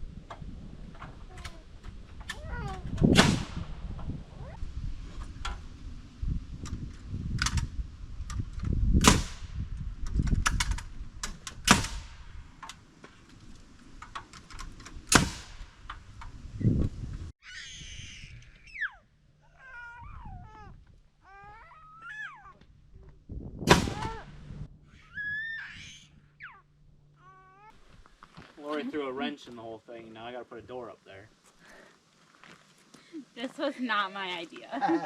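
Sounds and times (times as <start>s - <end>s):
cat meowing: 19.5s - 22.6s.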